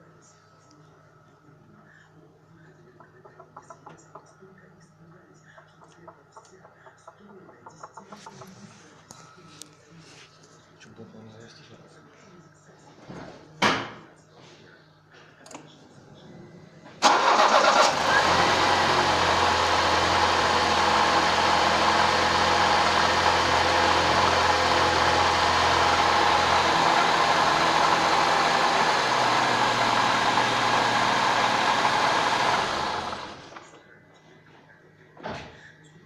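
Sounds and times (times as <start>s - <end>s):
petrol engine cranking and idling: 17.0s - 33.7s.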